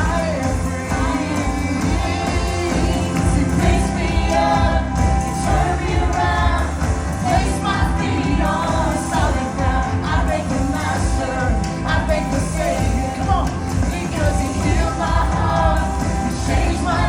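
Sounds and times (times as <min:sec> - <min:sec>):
band with heavy bass: 0:00.0 - 0:17.0
voices singing gospel: 0:00.0 - 0:17.0.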